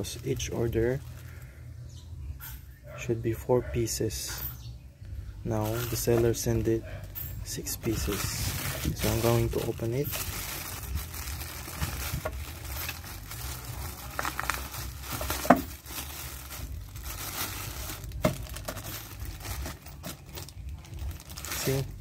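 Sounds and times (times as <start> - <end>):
plastic packaging crinkling: 0.0 - 1.5, 5.6 - 6.6, 7.4 - 22.0.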